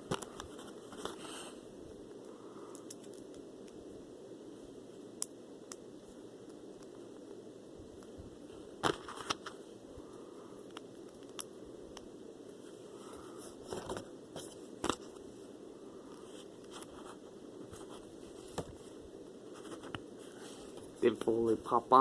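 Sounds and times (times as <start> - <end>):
low room hum: 0.0 - 22.0.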